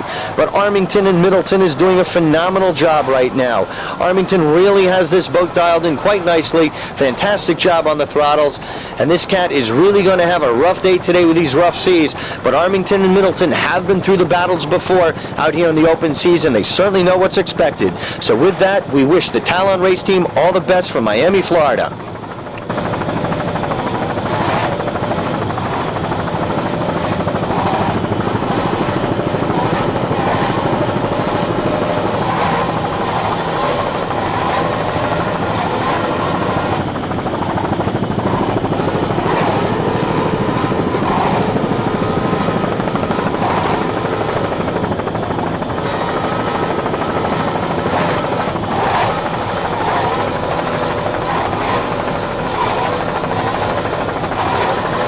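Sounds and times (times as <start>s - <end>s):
helicopter rotor and engine drone: 0.0s - 55.0s
faint wavering hum: 20.2s - 55.0s.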